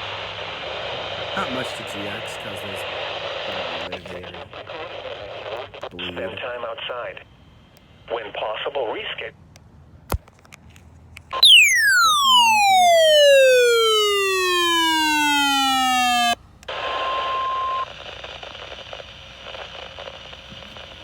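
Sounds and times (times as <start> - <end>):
radio static hiss: 0.0 - 9.4, 12.6 - 21.0
buzzy electronic tone sweeping down: 11.4 - 16.4.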